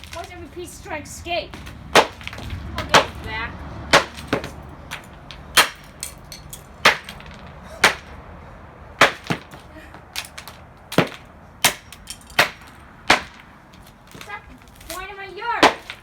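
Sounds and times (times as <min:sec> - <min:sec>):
blows cracking plastic casing: 0:09.0 - 0:16.0.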